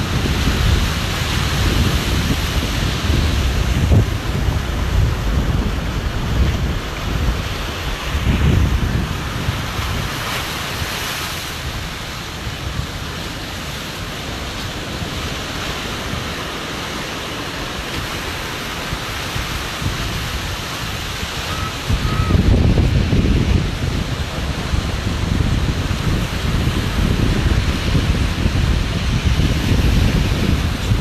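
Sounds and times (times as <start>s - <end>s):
low wind buffeting: 0.0s - 31.0s
wind hissing over microphone: 0.0s - 31.0s.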